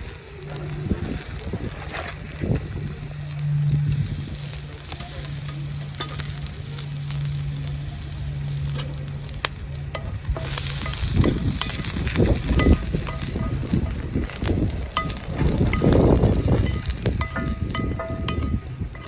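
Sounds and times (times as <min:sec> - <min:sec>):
steady low hum: 0:00.0 - 0:19.0
steak sizzling and crackling: 0:00.0 - 0:19.0.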